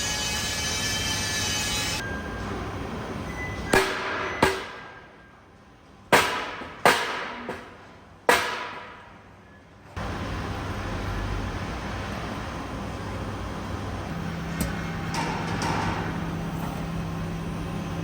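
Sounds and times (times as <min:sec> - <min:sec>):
hammer striking steel: 0:03.7 - 0:05.0, 0:06.1 - 0:07.7, 0:08.3 - 0:09.1, 0:14.5 - 0:16.2.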